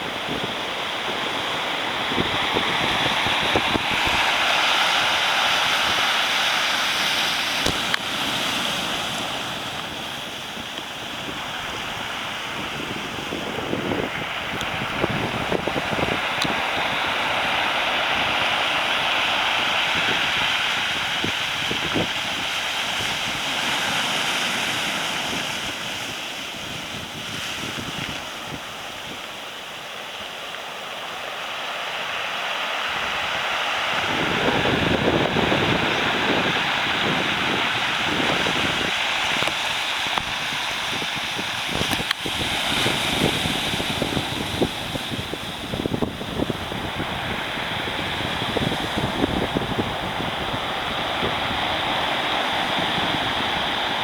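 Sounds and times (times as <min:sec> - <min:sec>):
wind buffeting microphone: 0:00.0 - 0:29.3, 0:32.8 - 0:54.0
heavy surf breaking on shore: 0:00.0 - 0:54.0.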